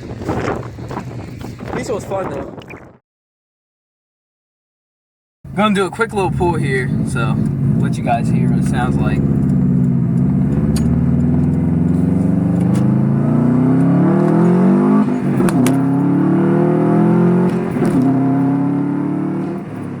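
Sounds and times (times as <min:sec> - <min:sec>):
car engine accelerating: 0:05.5 - 0:20.0.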